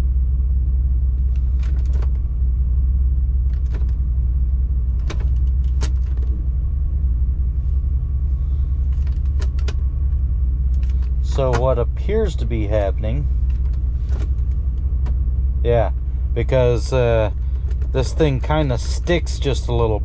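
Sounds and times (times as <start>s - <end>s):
engine idling: 0.0s - 20.0s.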